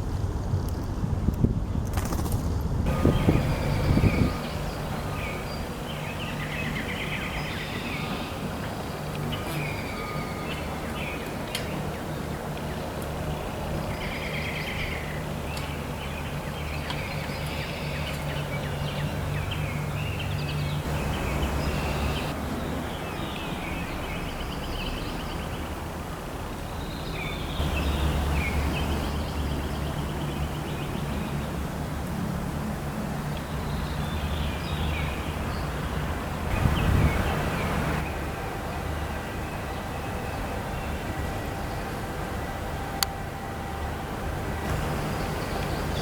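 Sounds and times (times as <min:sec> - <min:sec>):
steady low hum: 0:02.4 - 0:33.3, 0:35.2 - 0:46.0
small birds chirping and trilling: 0:02.9 - 0:25.8.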